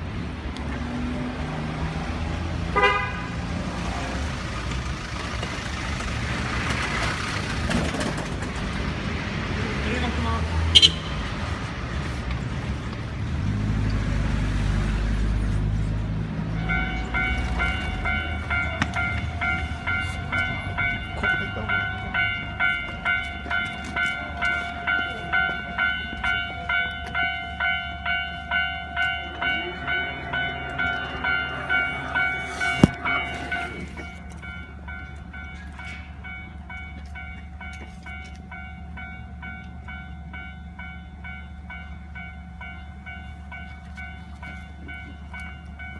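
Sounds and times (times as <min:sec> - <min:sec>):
level-crossing warning bell: 0:14.7 - 0:45.9
low rumble: 0:28.8 - 0:34.6.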